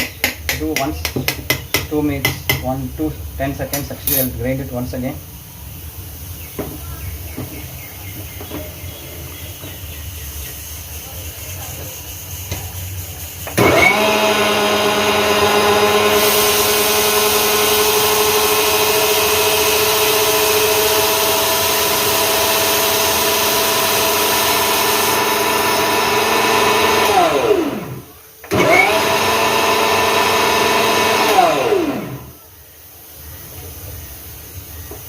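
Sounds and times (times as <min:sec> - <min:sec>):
mixer grinder motor whining: 0:13.4 - 0:32.4.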